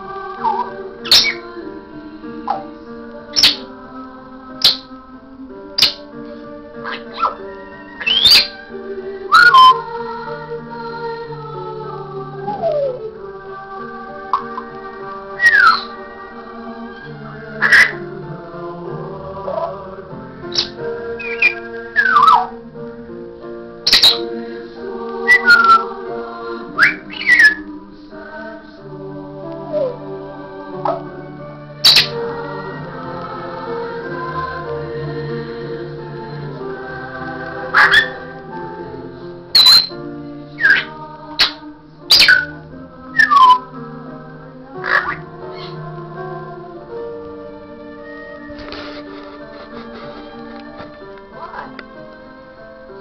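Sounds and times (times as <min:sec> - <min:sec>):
background music: 0:00.0 - 0:53.0
parrot whistling and squawking: 0:00.4 - 0:01.4, 0:03.4 - 0:03.7, 0:04.6 - 0:04.9, 0:05.8 - 0:06.0, 0:06.8 - 0:08.6, 0:09.3 - 0:09.8, 0:15.4 - 0:16.0, 0:16.9 - 0:18.0, 0:20.5 - 0:22.5, 0:23.9 - 0:24.3, 0:25.3 - 0:25.9, 0:26.8 - 0:27.6, 0:31.8 - 0:32.2, 0:37.8 - 0:38.2, 0:39.6 - 0:40.0, 0:40.6 - 0:42.5, 0:44.8 - 0:45.8.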